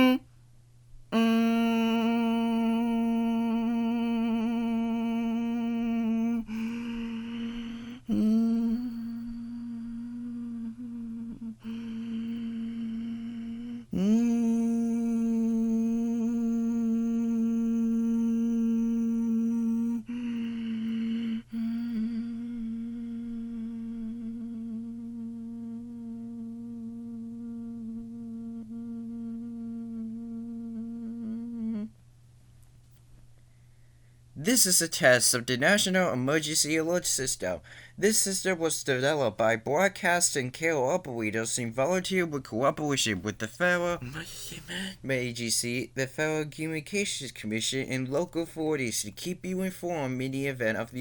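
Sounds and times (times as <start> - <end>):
person humming a low note: 0.0 - 0.2, 1.1 - 32.0.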